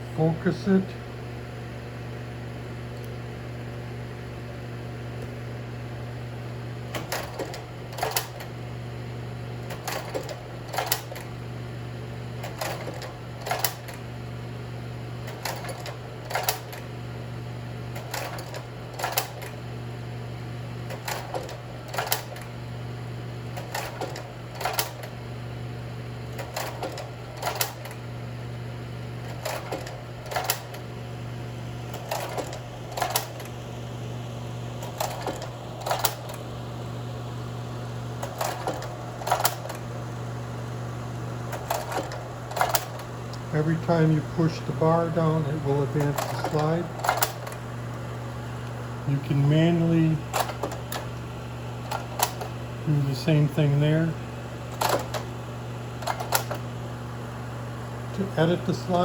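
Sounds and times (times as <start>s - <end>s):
projector blower humming: 0.0s - 59.0s
slide mechanism clacking: 9.7s - 11.3s, 12.4s - 14.0s, 15.3s - 16.8s, 18.0s - 19.6s, 20.9s - 22.5s, 23.6s - 25.1s, 26.4s - 28.0s, 29.3s - 30.8s, 31.9s - 33.5s, 34.8s - 36.4s, 38.2s - 39.8s, 41.5s - 43.5s, 45.4s - 47.6s, 50.3s - 51.2s, 51.9s - 52.6s, 54.7s - 55.3s, 56.0s - 56.6s.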